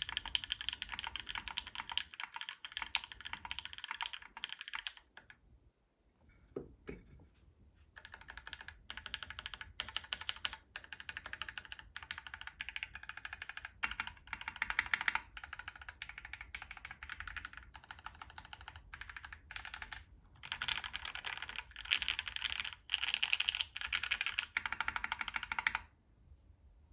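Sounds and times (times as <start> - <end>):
fast typing on mechanical keyboard: 0.0 - 5.4, 8.0 - 25.9.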